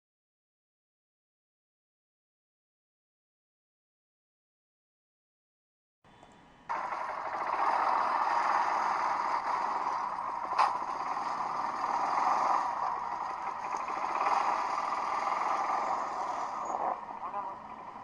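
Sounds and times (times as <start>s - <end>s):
atv engine running: 6.7s - 18.0s.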